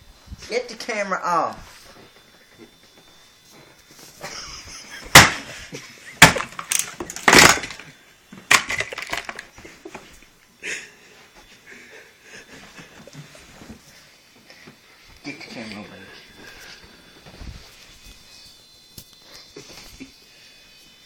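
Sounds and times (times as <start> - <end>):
electric fan being smashed: 4.3 - 9.6.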